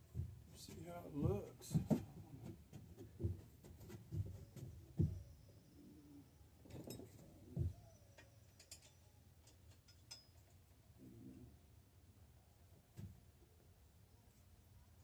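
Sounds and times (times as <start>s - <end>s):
metal bike parts clinking: 8.1s - 10.7s.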